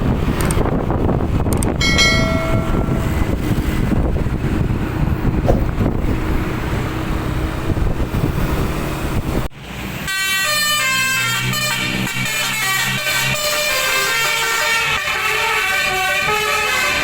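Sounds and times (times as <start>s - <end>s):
rumbling vehicle and road noise: 0.0s - 17.0s
musical air horn melody: 10.1s - 17.0s.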